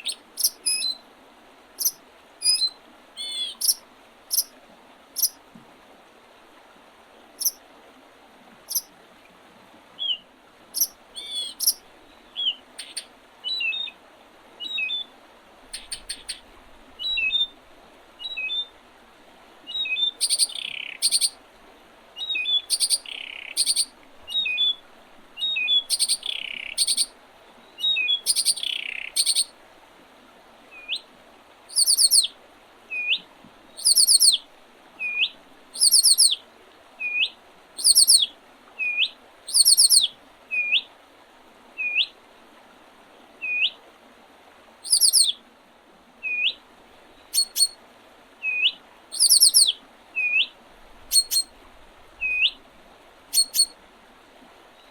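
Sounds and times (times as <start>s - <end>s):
songbirds singing: 0.0s - 1.0s, 1.8s - 4.5s, 5.2s - 5.4s, 7.4s - 7.6s, 8.7s - 8.9s, 10.0s - 14.0s, 14.6s - 15.1s, 15.7s - 17.6s, 18.2s - 18.8s, 19.6s - 21.4s, 22.2s - 29.5s, 30.7s - 31.1s, 31.7s - 32.3s, 32.9s - 34.4s, 35.0s - 36.4s, 37.0s - 40.9s, 41.8s - 42.1s, 43.4s - 43.8s, 44.8s - 45.4s, 46.2s - 47.8s, 48.4s - 51.6s, 52.2s - 52.6s, 53.3s - 53.8s
faint steady hiss: 0.0s - 54.9s.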